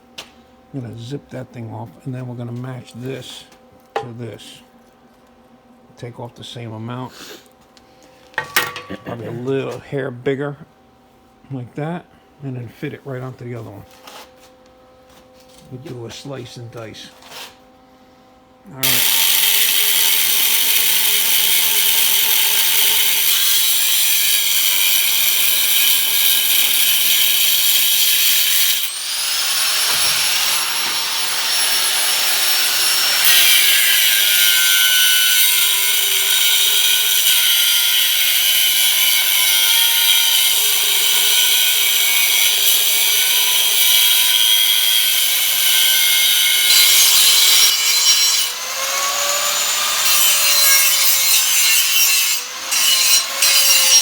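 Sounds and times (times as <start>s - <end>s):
angle grinder cutting metal: 18.8s - 54.0s.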